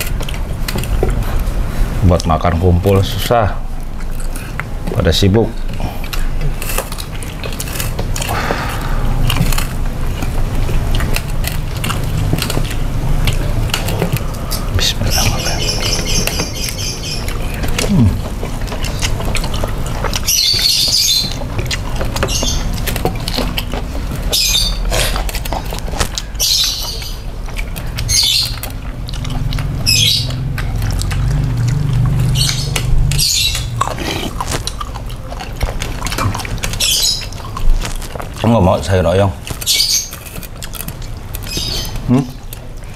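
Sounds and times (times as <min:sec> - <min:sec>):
chewing and lip smacking: 0:00.0 - 0:42.9
crisp crunch or slurp: 0:30.9 - 0:38.4.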